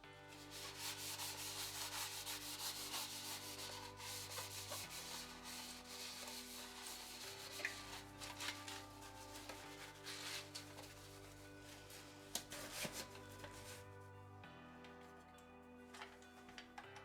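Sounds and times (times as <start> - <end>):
background music with held notes: 0.0 - 17.0
hand scrubbing strokes: 0.3 - 13.8.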